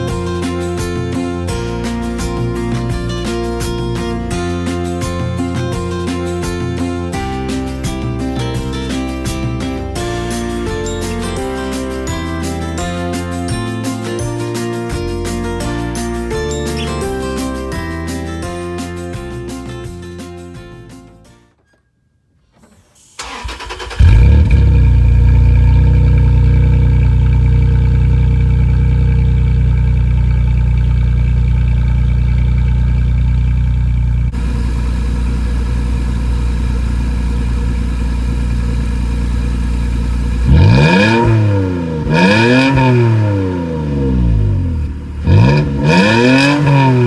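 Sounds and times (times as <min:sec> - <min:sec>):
engine starting: 0:22.4 - 0:25.0
engine idling: 0:22.5 - 0:42.4, 0:43.1 - 0:46.0
engine revving: 0:22.8 - 0:47.0.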